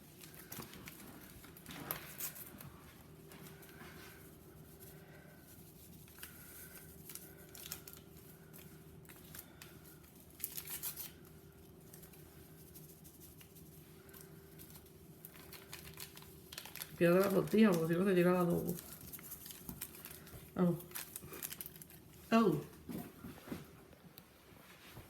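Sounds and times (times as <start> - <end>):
faint steady hum: 0.0 - 25.0
seasoning packets tearing: 15.2 - 22.2.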